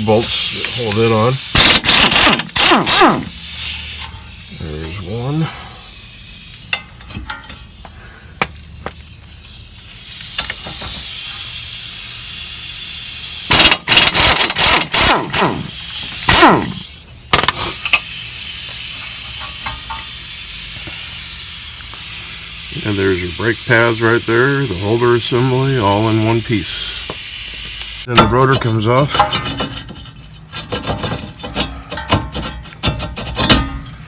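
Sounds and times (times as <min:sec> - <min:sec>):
air hissing: 0:00.0 - 0:28.1
air tool spinning: 0:00.0 - 0:28.1.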